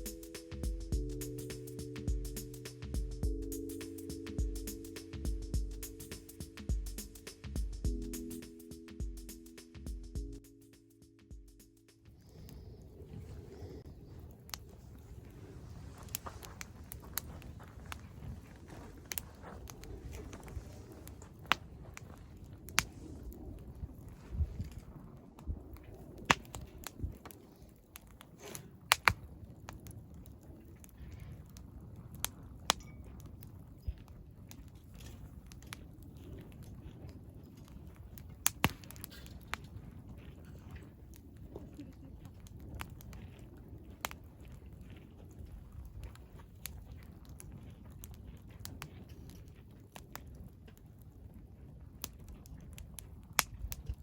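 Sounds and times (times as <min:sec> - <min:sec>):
wood fire crackling: 0:00.0 - 0:54.0
low steady fire rumble: 0:11.3 - 0:54.0
sharp pops from fire: 0:22.7 - 0:22.9, 0:25.8 - 0:50.8, 0:52.0 - 0:54.0.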